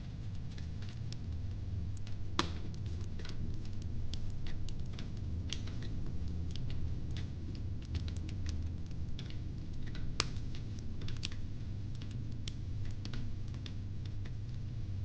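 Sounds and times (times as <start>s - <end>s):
fire crackling and popping: 0.1s - 15.0s.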